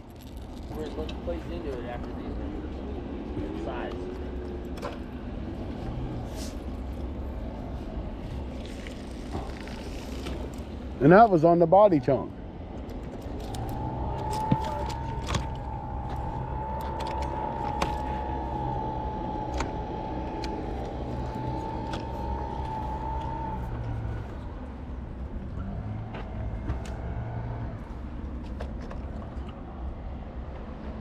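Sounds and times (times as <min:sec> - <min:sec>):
high wavering whine: 0:07.0 - 0:25.7
motor humming: 0:12.6 - 0:25.6.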